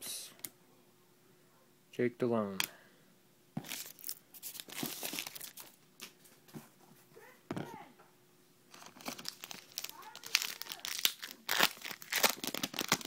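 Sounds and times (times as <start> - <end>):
foil wrapper tearing and crinkling: 3.6 - 6.1, 8.7 - 13.0.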